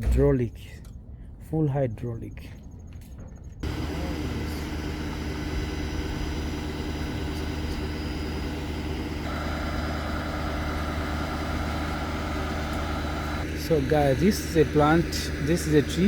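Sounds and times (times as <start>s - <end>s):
heavy engine idling: 3.6s - 16.0s
higher-pitched hum: 3.6s - 16.0s.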